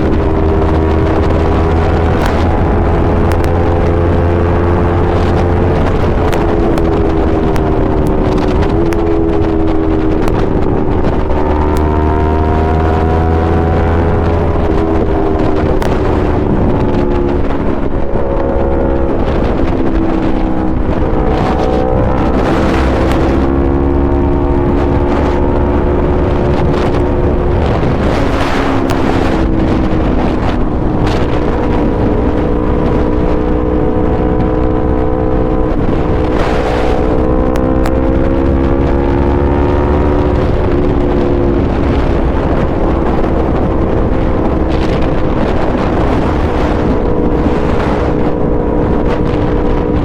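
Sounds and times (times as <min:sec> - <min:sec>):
motorcycle engine running: 0:00.0 - 0:50.0
wind noise on microphone: 0:00.0 - 0:50.0.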